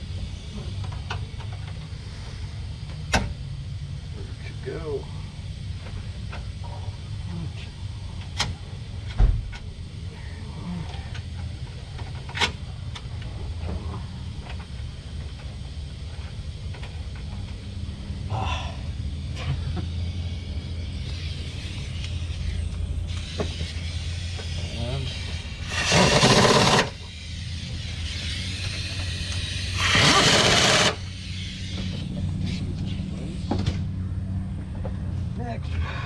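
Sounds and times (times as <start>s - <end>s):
steady low hum: 0.0s - 36.0s
loud hissing bursts: 23.8s - 32.7s.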